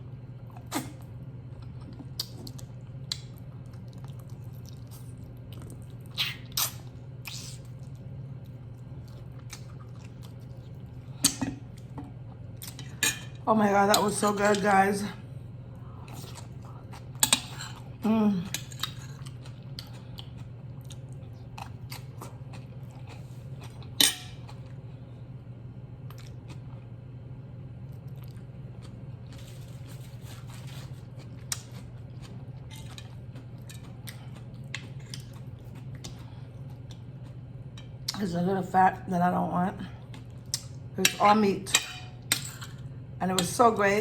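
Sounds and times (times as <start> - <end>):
steady low hum: 0.0 - 44.0
person chewing: 0.5 - 13.0, 16.0 - 24.8, 26.1 - 26.9, 27.9 - 38.2
bones and cutlery clicking on plate: 24.0 - 24.6.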